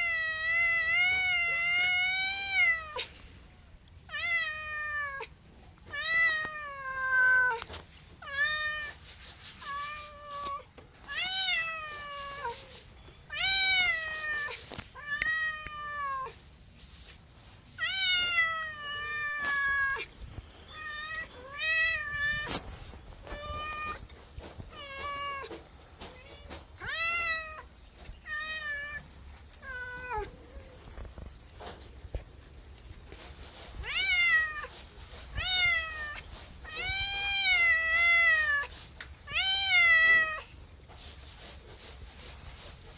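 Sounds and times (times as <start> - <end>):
cat meowing: 0.0 - 3.1, 4.1 - 9.0, 9.6 - 16.4, 17.8 - 30.9, 33.8 - 38.7, 39.3 - 40.5.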